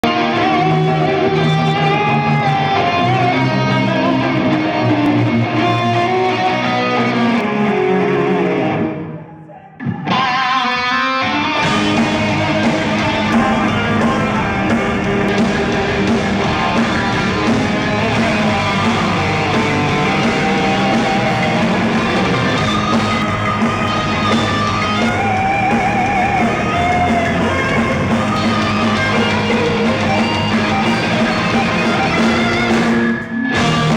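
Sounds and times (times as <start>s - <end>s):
rock band playing live: 0.0s - 9.1s, 10.0s - 33.9s
electric guitar: 0.0s - 33.9s.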